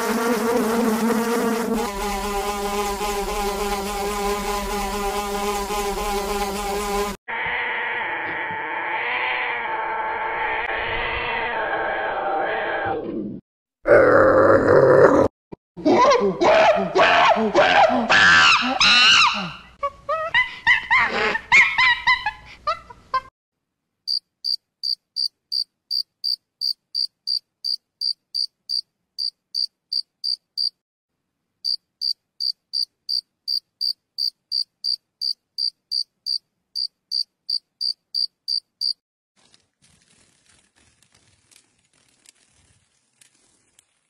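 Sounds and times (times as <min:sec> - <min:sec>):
loud pitched animal call: 0:07.3 - 0:13.1
cricket chirping: 0:24.1 - 0:30.8, 0:31.7 - 0:39.0.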